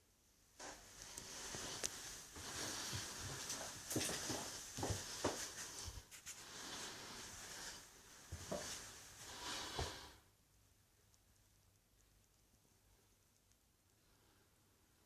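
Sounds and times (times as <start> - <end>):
rustling: 0.6 - 10.0.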